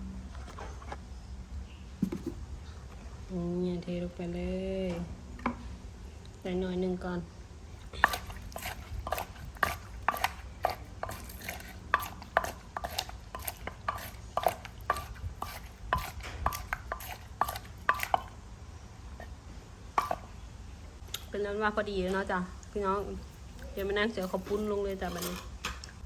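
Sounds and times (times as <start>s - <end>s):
pestle knocking against mortar: 8.0s - 18.3s.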